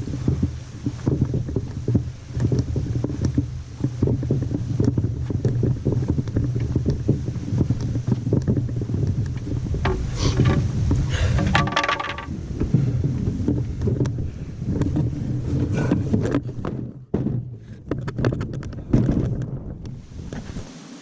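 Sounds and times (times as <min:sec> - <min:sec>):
small knocks and clatter: 0:00.0 - 0:19.6
wind buffeting microphone: 0:00.0 - 0:20.8.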